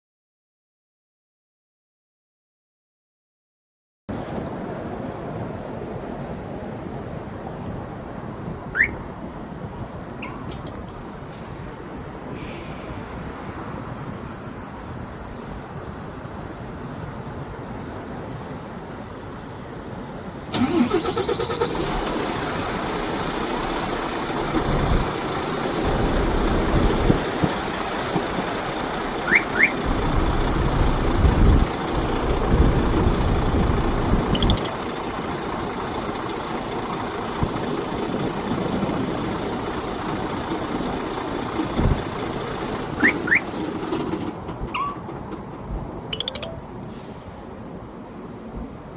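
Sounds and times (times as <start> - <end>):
diesel truck engine starting: 20.4 - 45.8
diesel engine idling: 20.5 - 44.5
short high chirps: 34.3 - 34.8, 46.1 - 46.7.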